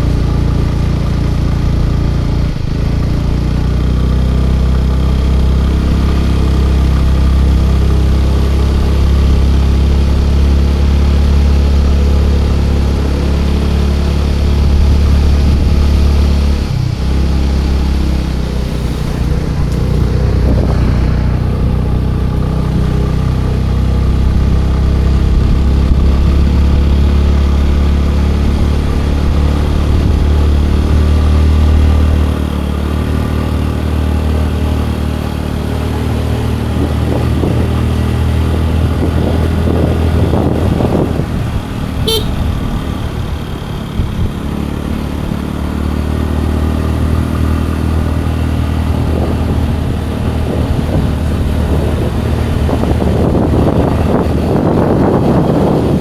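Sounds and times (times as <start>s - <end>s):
scooter engine running: 0.0s - 56.0s
vehicle horn toot: 42.0s - 42.7s.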